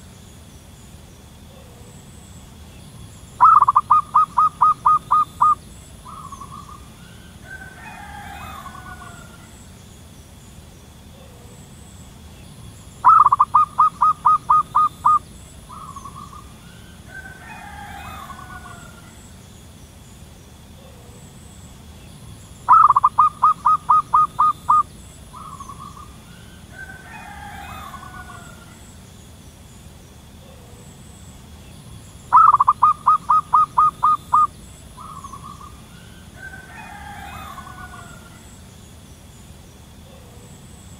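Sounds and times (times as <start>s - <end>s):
soft tangled bird calls: 0.0s - 40.9s
dove staccato calls: 3.1s - 9.7s, 12.8s - 19.4s, 22.5s - 29.0s, 32.1s - 38.7s.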